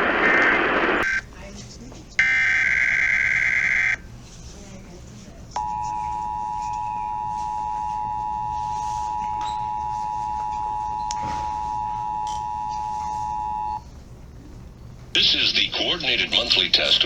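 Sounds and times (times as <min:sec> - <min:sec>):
two-tone alert tone: 0:05.6 - 0:13.8.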